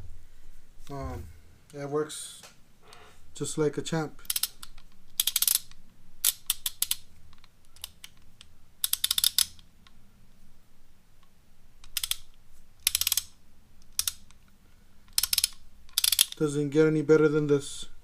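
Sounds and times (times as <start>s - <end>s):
ratchet wrench clicking: 4.2s - 7.0s, 8.8s - 9.6s, 11.8s - 13.3s, 15.1s - 16.4s.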